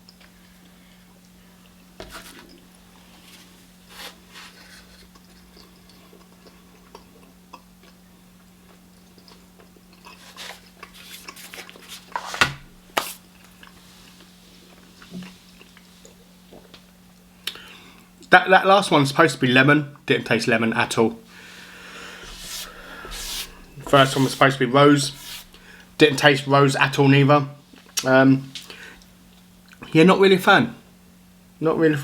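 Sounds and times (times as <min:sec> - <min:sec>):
person chewing: 0:04.8 - 0:12.0
steady low hum: 0:20.0 - 0:29.9.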